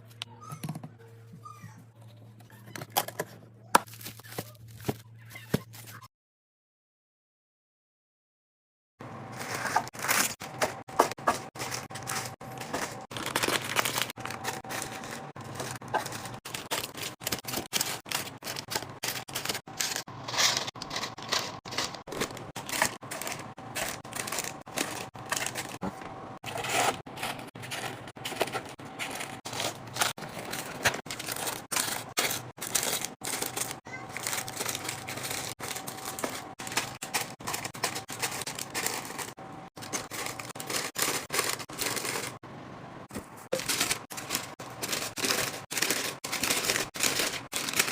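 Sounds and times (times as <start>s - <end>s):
packaging clicks and rustles: 9.4s - 42.4s, 43.5s - 47.9s.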